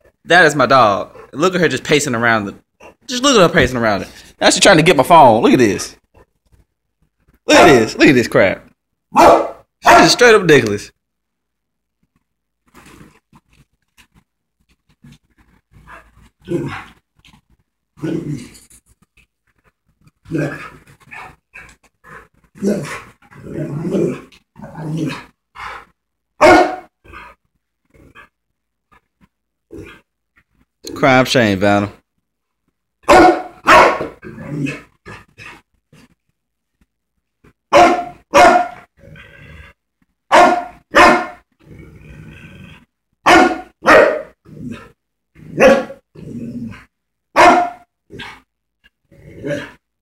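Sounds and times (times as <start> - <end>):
dog barking and growling: 0.0 - 4.3, 7.3 - 8.4, 9.0 - 10.5, 14.9 - 30.2, 33.0 - 36.3, 37.6 - 50.0
dog barking: 7.5 - 7.9, 9.1 - 10.2, 26.4 - 26.9, 33.0 - 34.2, 37.7 - 38.9, 40.3 - 41.4, 43.2 - 44.4, 45.6 - 46.0, 47.3 - 47.9
dog growling: 15.0 - 17.0, 17.9 - 18.8, 20.2 - 25.9, 29.7 - 30.1, 34.0 - 36.2, 38.9 - 39.9, 41.6 - 43.0, 43.7 - 47.0, 48.0 - 49.9.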